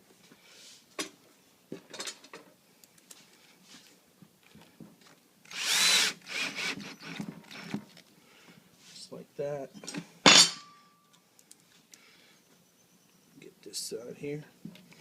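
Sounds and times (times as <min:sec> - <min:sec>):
power drill motor whine: 0:05.4 - 0:07.8.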